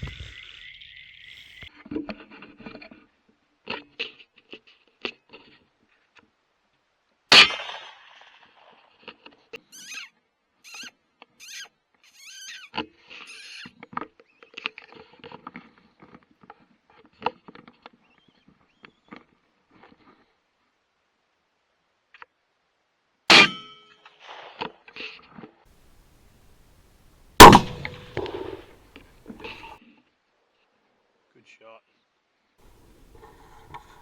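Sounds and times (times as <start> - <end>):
short squeaks: 9.7 - 10.1
rifle shot: 27.4 - 28.7, 32.7 - 34.0.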